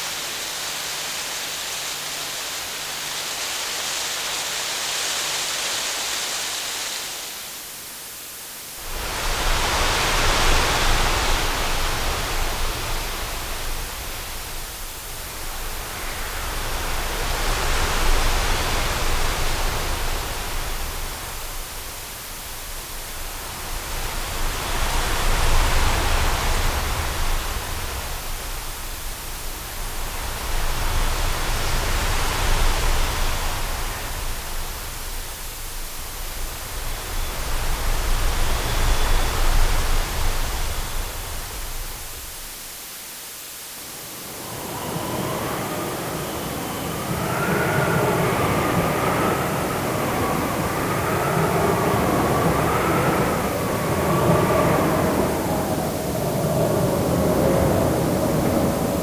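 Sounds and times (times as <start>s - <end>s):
strong wind gusting: 8.8s - 42.6s, 44.0s - 59.0s
steady low rumble: 44.2s - 59.0s.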